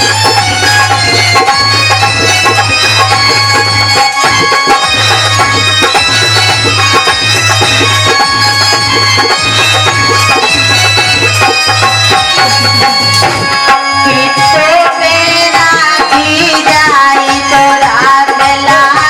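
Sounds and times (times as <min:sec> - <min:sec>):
hand drum beat: 0:00.0 - 0:13.6
held melodic instrument notes: 0:00.0 - 0:15.4.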